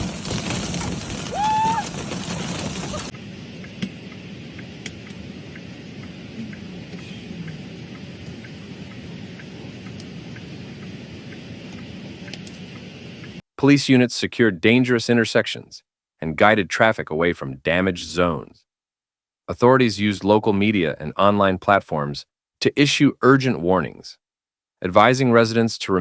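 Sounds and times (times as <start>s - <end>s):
rain: 0.0s - 13.4s
wind: 0.0s - 13.4s.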